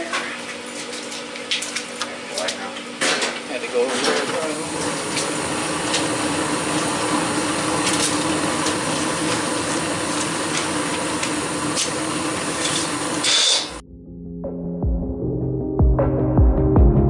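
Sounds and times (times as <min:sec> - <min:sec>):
machine running with rushing hiss: 0:03.0 - 0:13.8.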